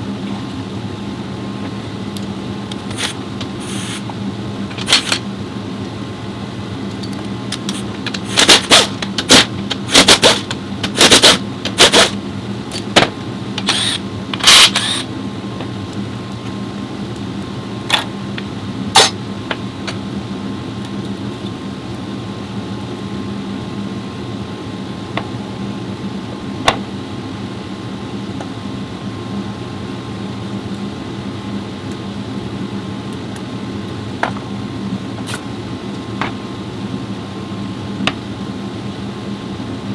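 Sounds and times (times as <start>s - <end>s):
workshop hum: 0.0s - 39.9s
tools clicking and knocking: 4.7s - 5.2s.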